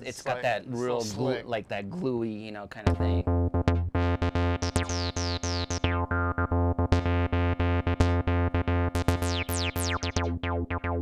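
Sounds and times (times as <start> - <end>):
squelchy acid synth bass line: 2.9 - 11.0.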